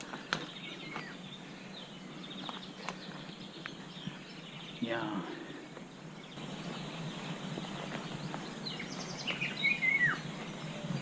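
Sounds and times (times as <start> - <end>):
outdoor background hiss: 0.0 - 11.0
songbird whistling: 6.2 - 11.0.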